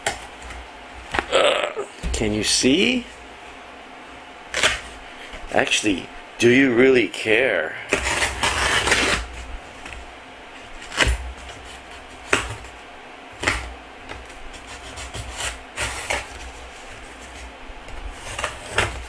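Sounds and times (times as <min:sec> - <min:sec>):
knife scraping tape on cardboard: 0:07.9 - 0:09.3, 0:14.5 - 0:17.4, 0:18.1 - 0:19.0.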